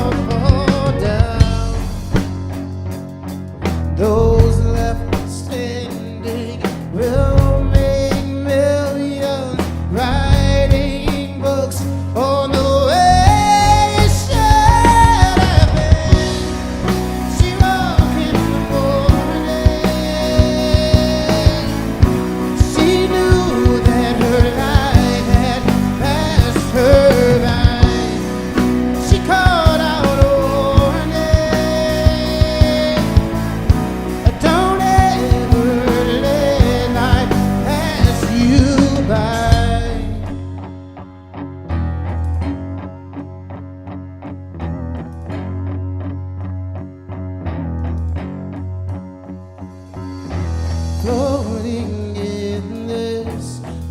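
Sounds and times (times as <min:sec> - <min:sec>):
rock band playing live: 0:00.0 - 0:53.9
sharp drum hits: 0:00.6 - 0:02.9.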